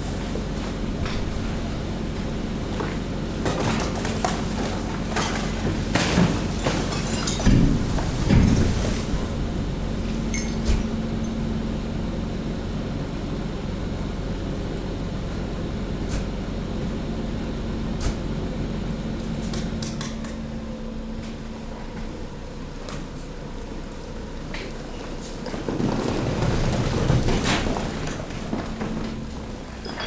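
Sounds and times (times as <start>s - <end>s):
hydraulic pump humming: 0.1s - 19.8s.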